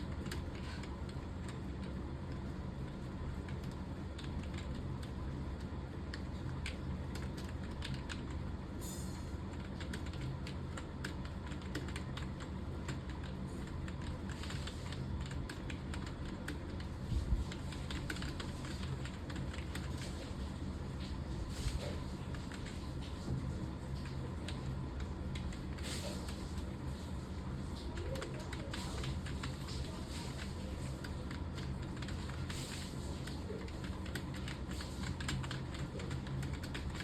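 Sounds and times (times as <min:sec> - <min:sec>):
fast typing on keyboard: 0:00.0 - 0:08.5, 0:09.5 - 0:20.5, 0:21.5 - 0:26.7, 0:27.7 - 0:37.0
steady low hum: 0:00.0 - 0:37.0.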